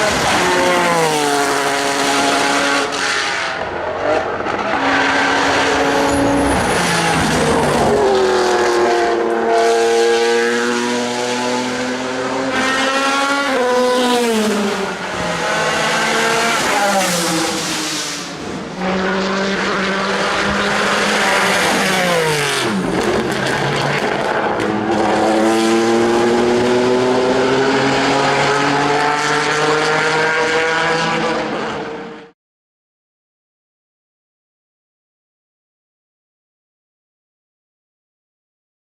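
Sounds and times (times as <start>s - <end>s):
race car engine shifting gears: 4.2s - 9.4s.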